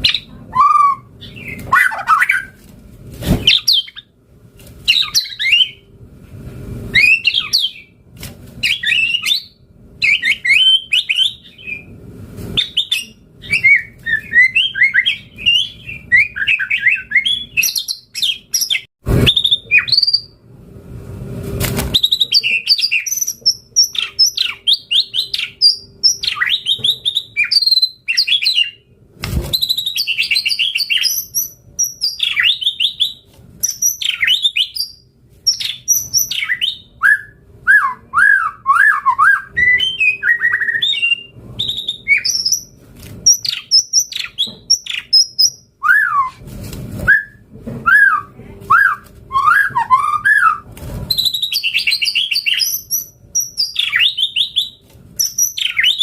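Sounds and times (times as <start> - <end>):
bird singing whistles and trills: 6.9 - 7.9, 8.6 - 11.9, 12.6 - 20.3, 21.9 - 28.8, 29.5 - 42.7, 43.3 - 46.4, 47.1 - 56.0.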